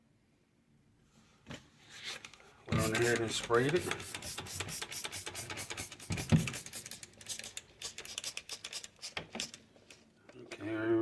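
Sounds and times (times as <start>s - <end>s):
scratchy rubbing on plastic: 2.8s - 9.2s.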